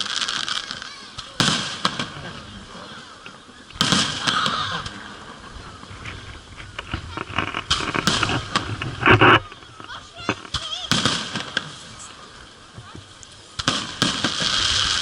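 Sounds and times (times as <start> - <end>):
firework bursts: 0.0 - 15.0
firework crackling: 0.0 - 15.0.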